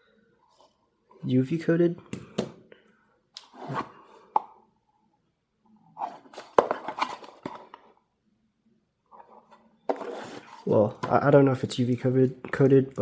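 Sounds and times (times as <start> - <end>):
plastic puzzle cube handled: 6.0 - 7.9.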